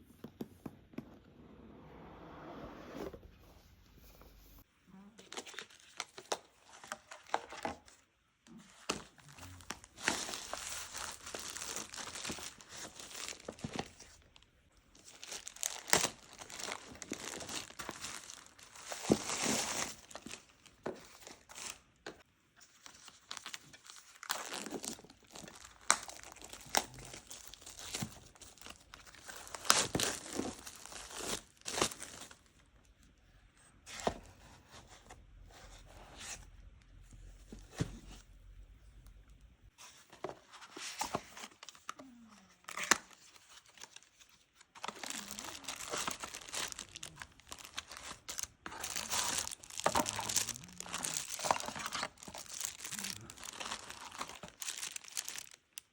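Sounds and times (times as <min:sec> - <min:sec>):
packaging crinkling and tearing: 0:08.6 - 0:20.5, 0:22.8 - 0:32.4, 0:42.6 - 0:55.9.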